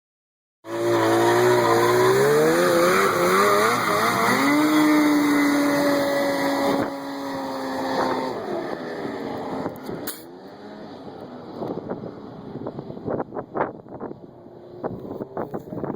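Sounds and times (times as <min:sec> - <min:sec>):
snowmobile engine running: 0:00.7 - 0:10.4.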